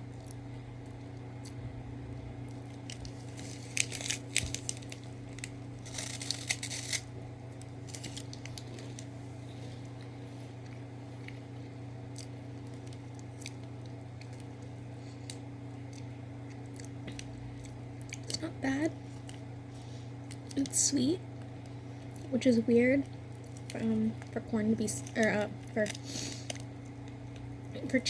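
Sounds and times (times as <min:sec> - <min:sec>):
steady low hum: 0:00.0 - 0:28.0
plastic wrapper crinkling: 0:02.5 - 0:09.2, 0:23.4 - 0:27.5.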